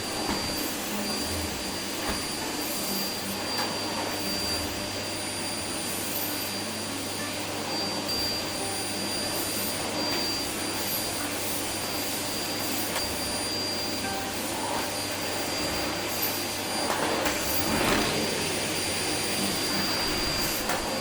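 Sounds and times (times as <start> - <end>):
vacuum cleaner running: 0.0 - 21.0.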